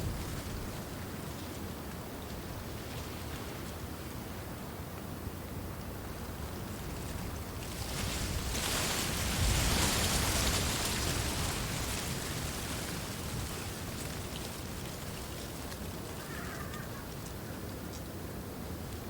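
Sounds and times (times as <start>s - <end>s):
wind rustling through reeds: 0.0s - 19.0s.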